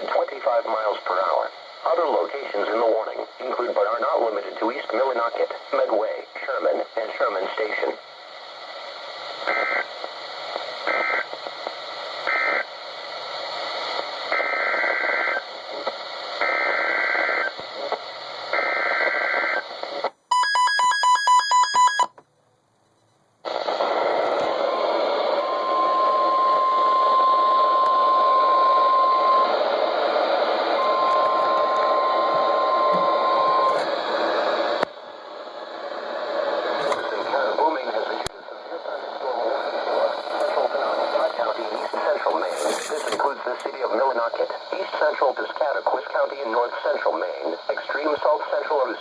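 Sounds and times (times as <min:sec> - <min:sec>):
heavy radio static: 0:00.0 - 0:20.1, 0:23.5 - 0:49.0
high warning alarm tone: 0:20.3 - 0:22.1
emergency alert tones: 0:20.3 - 0:22.2.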